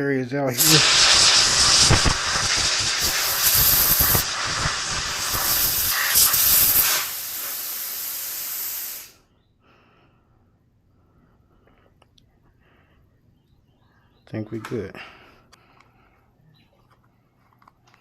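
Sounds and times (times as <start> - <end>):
compressed air hissing from nozzle: 0.5 - 9.2.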